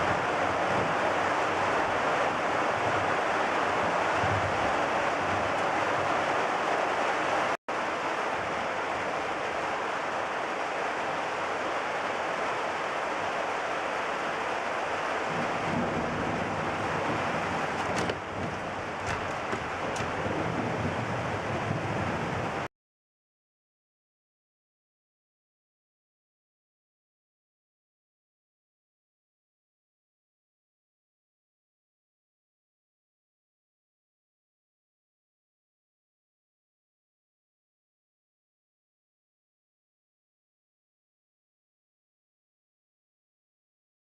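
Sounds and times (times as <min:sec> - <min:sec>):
heavy rain: 0:00.0 - 0:22.7.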